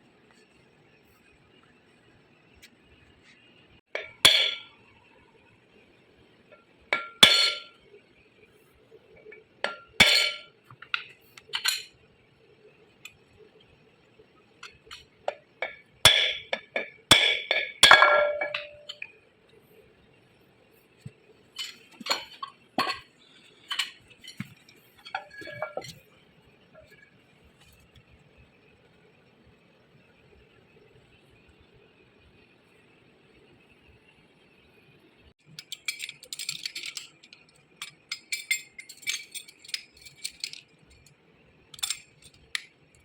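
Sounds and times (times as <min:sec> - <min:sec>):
metal tools clinking on metal: 0:07.0 - 0:07.7, 0:09.6 - 0:12.0, 0:14.6 - 0:19.2, 0:21.5 - 0:26.0, 0:35.6 - 0:41.1, 0:41.8 - 0:42.7.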